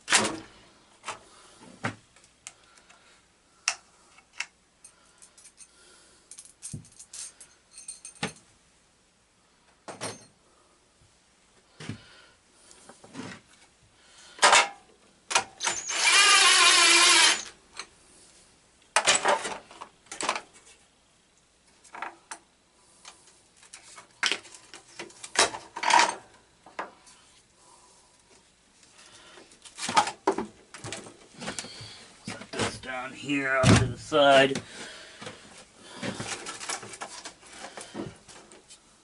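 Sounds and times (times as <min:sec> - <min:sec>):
tools and metal parts clinking: 0:06.3 - 0:08.5, 0:19.0 - 0:20.5, 0:25.3 - 0:26.2
power drill running: 0:15.6 - 0:17.5.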